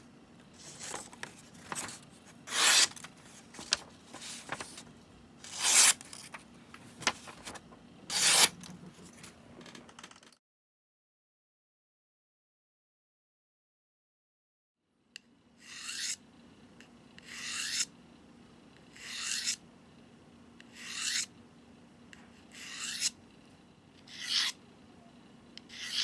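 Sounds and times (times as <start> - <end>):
knife scraping through sharpener: 2.5 - 3.0, 5.5 - 6.0, 8.1 - 8.6, 15.7 - 16.2, 17.2 - 17.9, 19.0 - 19.6, 20.8 - 21.3, 22.5 - 23.2, 24.1 - 24.6, 25.7 - 26.0.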